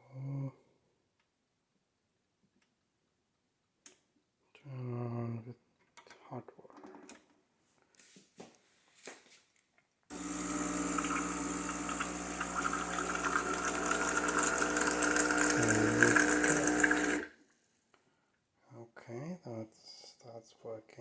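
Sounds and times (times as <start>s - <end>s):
espresso machine pump humming: 10.1s - 17.3s
water hissing: 10.1s - 17.3s.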